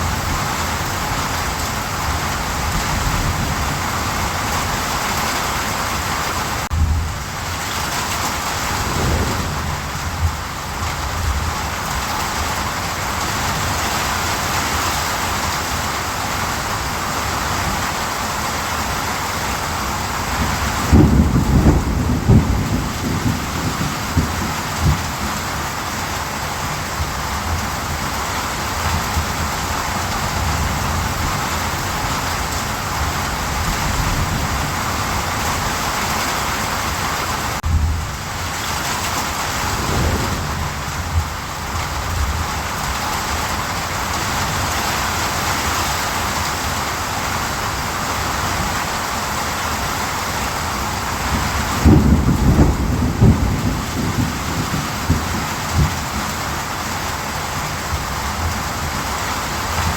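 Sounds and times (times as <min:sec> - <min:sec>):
heavy rain: 0:00.0 - 0:59.9
thunder rumbling: 0:06.7 - 0:12.4, 0:20.4 - 0:25.6, 0:39.3 - 0:43.1, 0:51.4 - 0:56.0.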